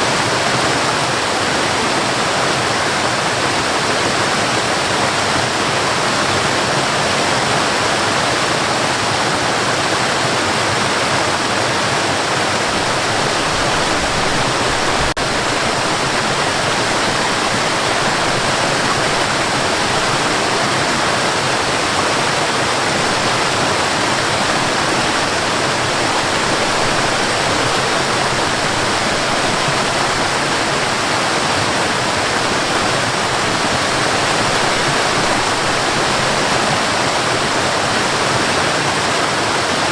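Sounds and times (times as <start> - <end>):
cascading water rushing: 0.0 - 39.9.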